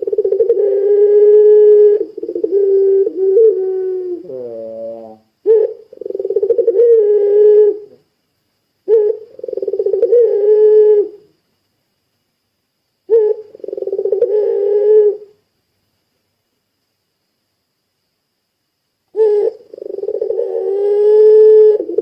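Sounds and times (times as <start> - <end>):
dove cooing: 0.0 - 8.0, 8.9 - 11.3, 13.1 - 15.4, 19.1 - 22.0.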